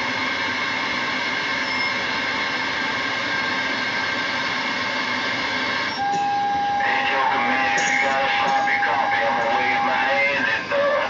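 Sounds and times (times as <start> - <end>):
faint whining tones: 5.8 - 11.0
steady high whistle: 5.9 - 7.0
radio static hiss: 6.8 - 11.0.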